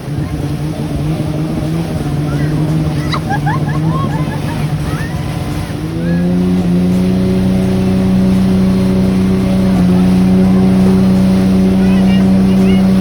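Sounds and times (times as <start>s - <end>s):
boat engine revving: 0.0s - 13.0s.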